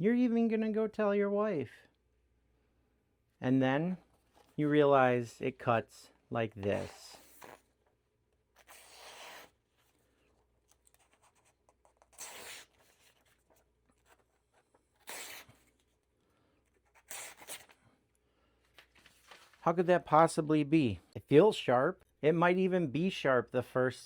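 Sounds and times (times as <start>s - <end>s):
knife tearing through paper: 8.6s - 9.6s, 11.0s - 13.4s, 15.0s - 15.8s, 16.8s - 17.8s.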